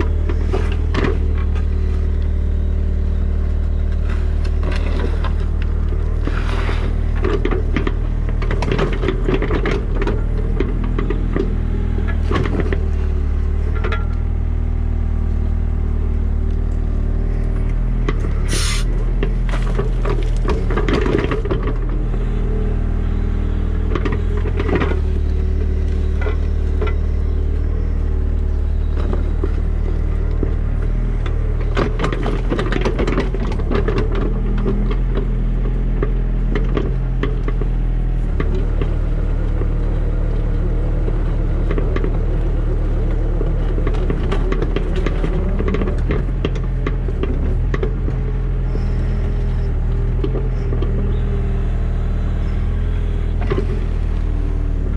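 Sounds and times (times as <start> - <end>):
diesel engine running: 0.0 - 54.9
clanks and scraping while digging: 13.7 - 14.3, 18.0 - 22.2.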